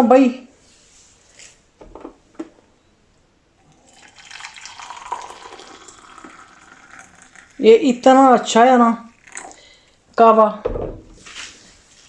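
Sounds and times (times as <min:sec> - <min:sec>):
water pouring into a cup: 0:03.6 - 0:09.8.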